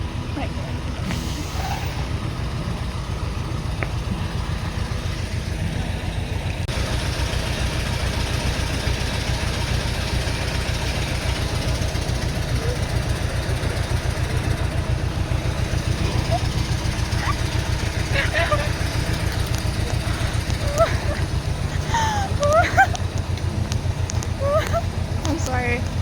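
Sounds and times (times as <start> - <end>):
diesel engine idling: 0.0 - 26.0
broad hiss: 1.0 - 2.2.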